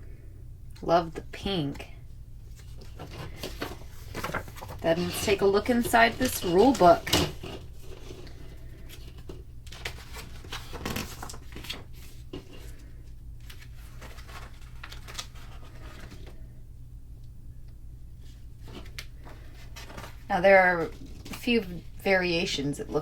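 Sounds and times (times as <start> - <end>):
steady low hum: 0.0 - 23.0
paper pages rustling: 2.4 - 16.5, 18.2 - 22.0.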